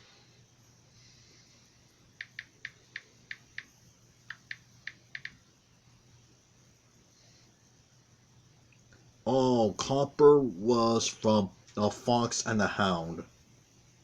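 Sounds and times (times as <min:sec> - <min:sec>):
faint steady hum: 0:00.0 - 0:14.0.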